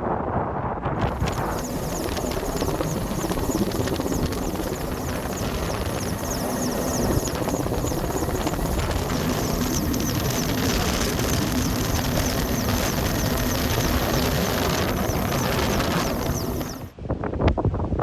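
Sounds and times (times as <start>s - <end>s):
wind noise: 0.7s - 18.0s
helicopter rotor chopping: 1.0s - 17.0s.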